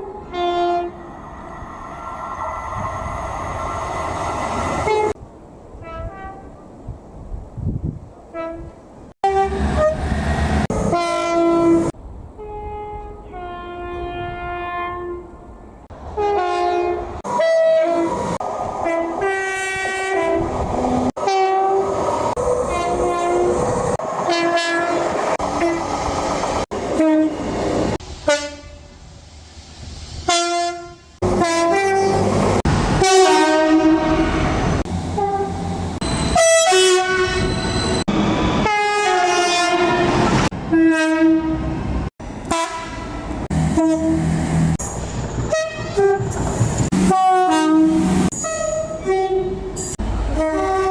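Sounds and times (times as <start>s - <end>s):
train running on rails: 0.0s - 7.3s, 8.2s - 50.9s
train horn blasts: 5.8s - 6.6s, 8.3s - 10.0s, 10.8s - 15.3s, 16.2s - 18.1s, 18.8s - 20.5s, 21.2s - 21.8s, 24.2s - 25.8s, 27.0s - 27.4s, 28.2s - 29.0s, 30.3s - 32.2s, 33.0s - 34.6s, 35.2s - 37.6s, 38.6s - 41.8s, 42.5s - 44.3s, 46.9s - 49.6s, 50.3s - 50.9s.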